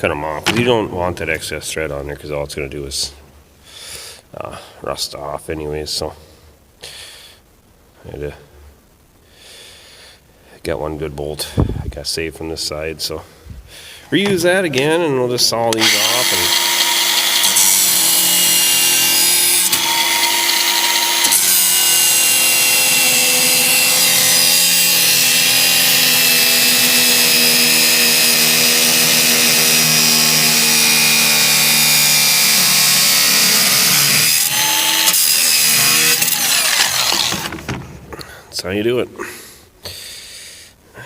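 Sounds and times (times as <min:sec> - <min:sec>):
power saw cutting steel: 0:15.7 - 0:37.7.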